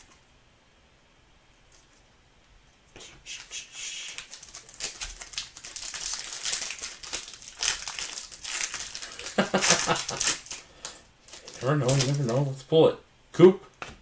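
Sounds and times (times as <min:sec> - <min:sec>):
plastic wrapper crinkling: 0:03.4 - 0:12.7.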